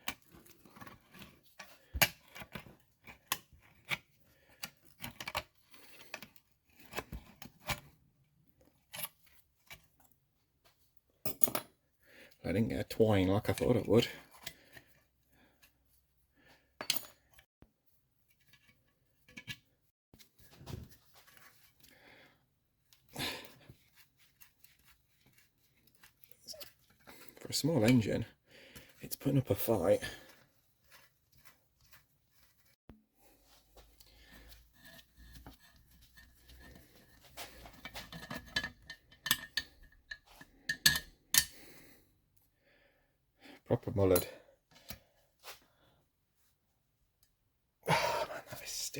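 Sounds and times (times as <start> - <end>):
hand tools clicking and scraping: 33.8 - 41.8.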